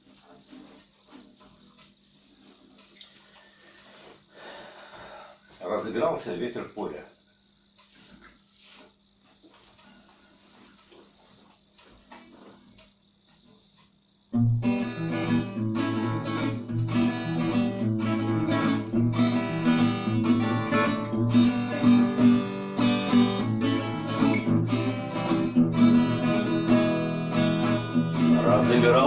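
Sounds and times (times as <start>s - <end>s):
strummed acoustic guitar music: 14.4s - 29.0s.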